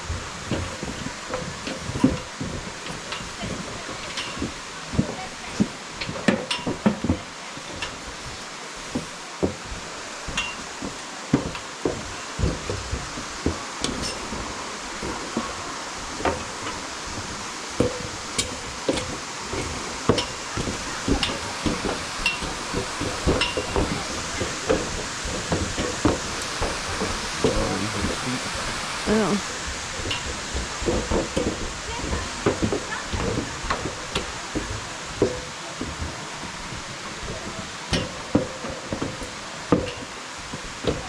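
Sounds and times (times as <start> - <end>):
steady hiss: 0.0 - 41.0
footsteps on hard trail: 8.0 - 15.6.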